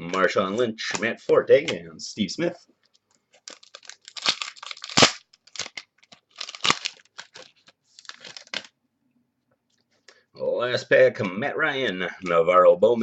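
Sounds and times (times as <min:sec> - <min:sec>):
foil wrapper tearing and crinkling: 0:03.3 - 0:08.7.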